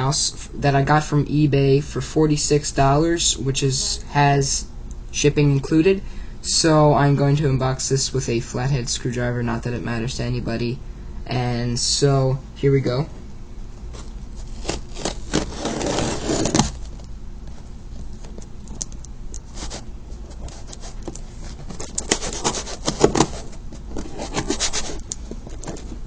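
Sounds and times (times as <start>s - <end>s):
screwdriver scraping a package: 14.0s - 16.9s, 19.4s - 26.0s.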